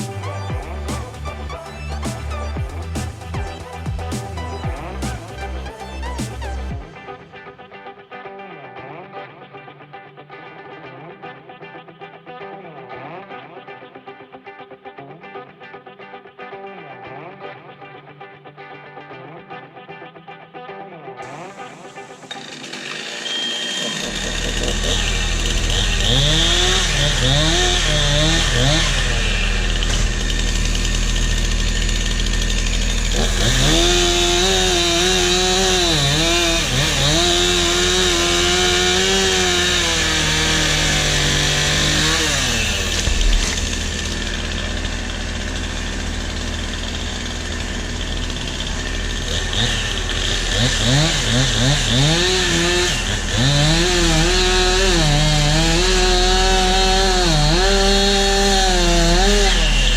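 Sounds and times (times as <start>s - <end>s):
chainsaw cutting wood: 0.0s - 7.5s, 21.2s - 59.9s.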